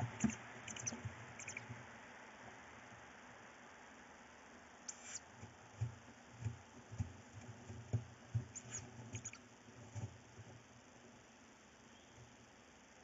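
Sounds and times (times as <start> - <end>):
owl chicks squeaking: 0.0 - 1.7, 4.9 - 5.2, 8.5 - 9.4.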